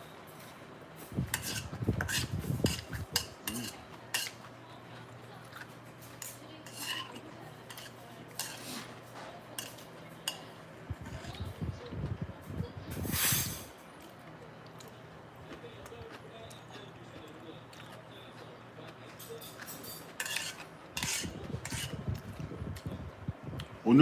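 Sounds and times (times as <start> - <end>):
utensils clinking against a bowl: 0.0 - 11.5, 12.9 - 14.1, 17.7 - 22.2
steady low hum: 0.0 - 24.0.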